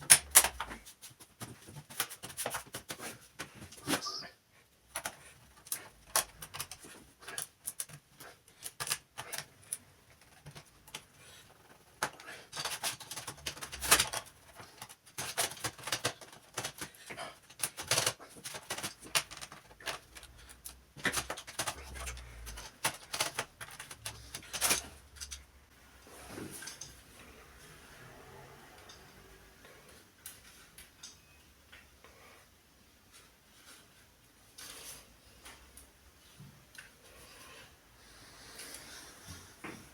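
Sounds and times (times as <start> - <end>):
plastic and metal parts clicking: 4.9 - 25.5.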